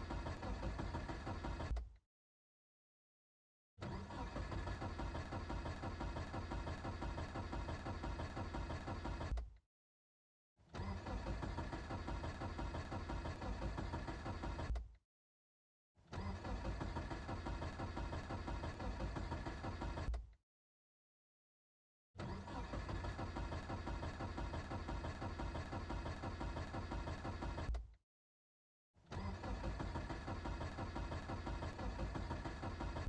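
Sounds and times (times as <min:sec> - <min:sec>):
car engine cranking: 0:00.0 - 0:01.9, 0:03.8 - 0:09.5, 0:10.8 - 0:14.8, 0:16.1 - 0:20.2, 0:22.2 - 0:27.9, 0:29.1 - 0:33.0.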